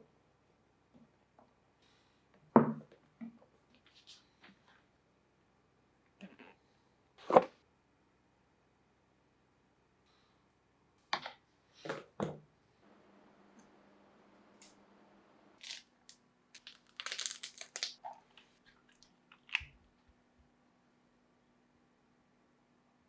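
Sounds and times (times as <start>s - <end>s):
packaging rustling: 15.6s - 18.0s.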